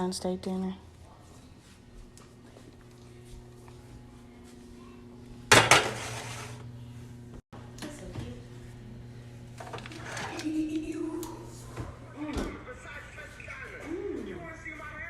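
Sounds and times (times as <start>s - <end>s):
steady low hum: 0.0s - 15.0s
dishes knocking: 5.5s - 6.0s
cookware clashing: 5.5s - 6.4s.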